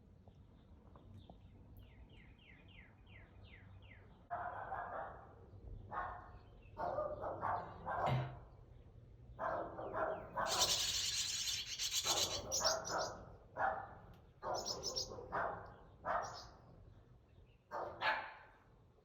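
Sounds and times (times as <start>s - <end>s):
baby birds begging chirps: 10.2s - 13.4s, 14.4s - 15.3s, 16.2s - 16.6s.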